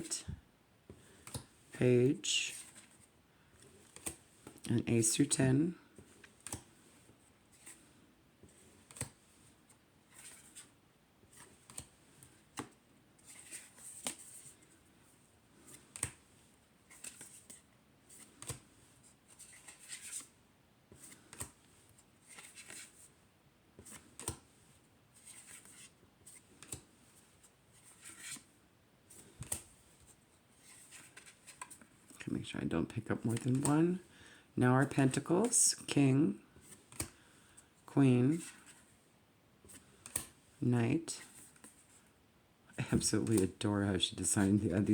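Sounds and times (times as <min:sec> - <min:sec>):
cards snapping and sliding: 0:01.2 - 0:01.6, 0:08.8 - 0:09.2, 0:15.7 - 0:16.2, 0:18.2 - 0:18.7, 0:21.0 - 0:21.6, 0:26.6 - 0:26.9, 0:29.2 - 0:29.7, 0:36.7 - 0:37.2, 0:39.7 - 0:40.4.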